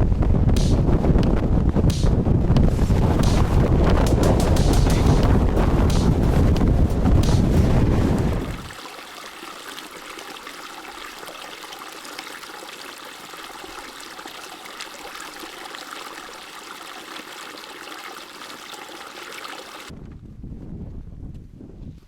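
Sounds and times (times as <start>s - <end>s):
small stream trickling: 8.5s - 19.9s.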